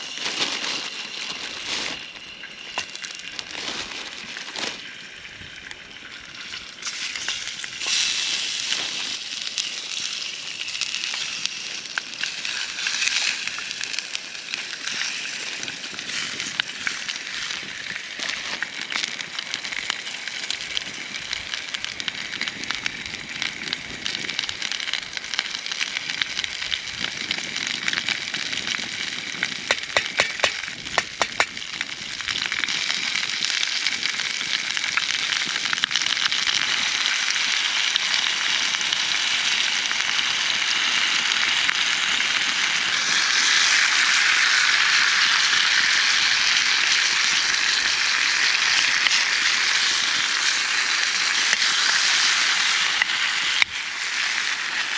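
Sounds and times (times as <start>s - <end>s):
campfire crackling: 0.0s - 54.9s
sizzling hiss: 0.0s - 54.9s
sharp pops: 29.7s - 31.6s.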